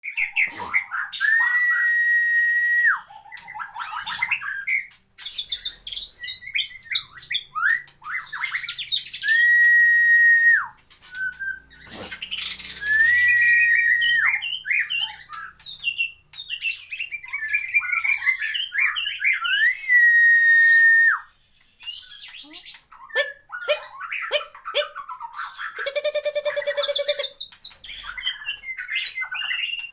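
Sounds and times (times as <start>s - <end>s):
bird long whistles: 8.5s - 14.4s
bird warbles and chips: 21.8s - 29.9s.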